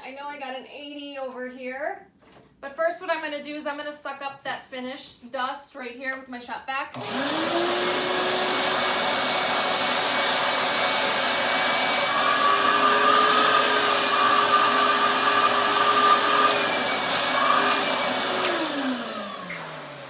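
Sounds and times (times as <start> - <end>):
shop vac running: 7.0 - 20.0.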